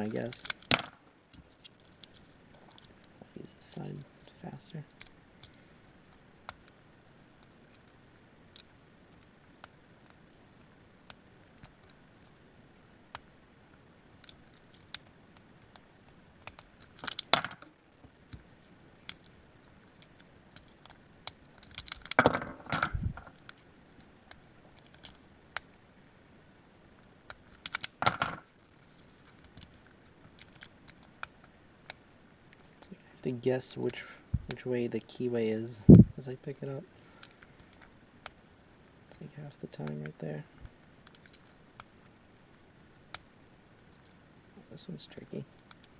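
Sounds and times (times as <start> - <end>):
lock picks clicking: 20.0 - 22.2.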